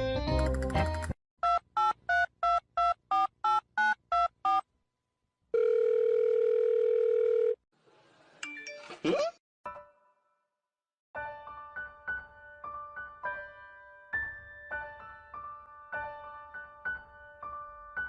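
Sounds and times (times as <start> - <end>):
steady telephone tone: 5.5 - 7.6.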